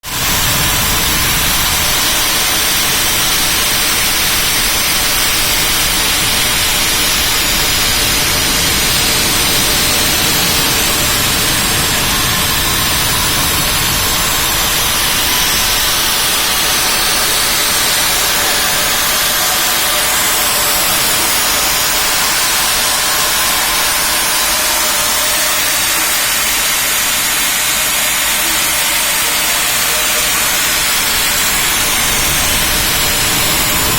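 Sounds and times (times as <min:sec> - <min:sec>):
milling machine hissing: 0:00.0 - 0:33.9.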